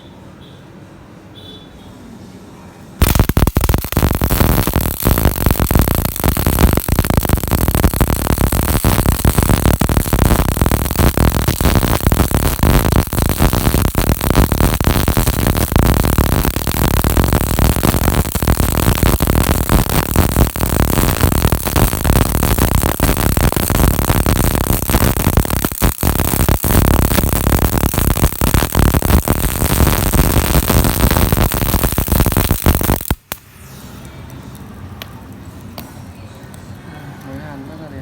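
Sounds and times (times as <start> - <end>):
welding arc crackling: 3.0 - 33.5.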